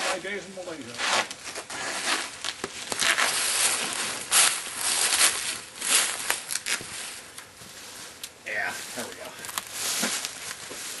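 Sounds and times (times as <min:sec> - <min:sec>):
gear rustling and scraping: 0:00.0 - 0:11.0.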